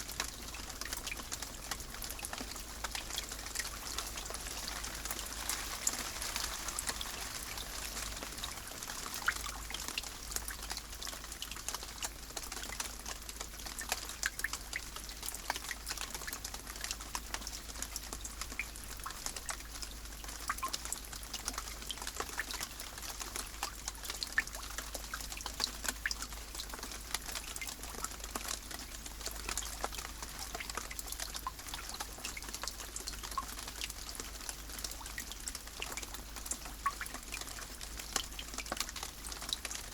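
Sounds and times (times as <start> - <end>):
steady rain hiss: 0.0 - 39.9
raindrop hits: 4.3 - 9.7.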